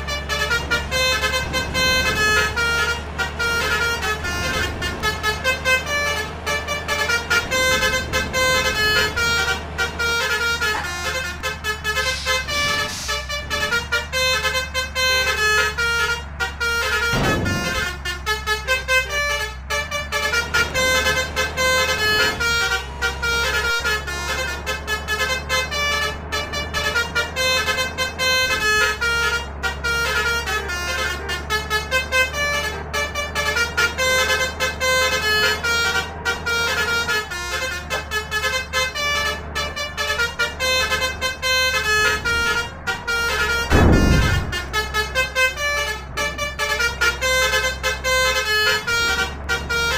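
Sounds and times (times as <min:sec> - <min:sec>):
low engine drone: 0:00.0 - 0:49.9
musical air horns: 0:00.0 - 0:49.9.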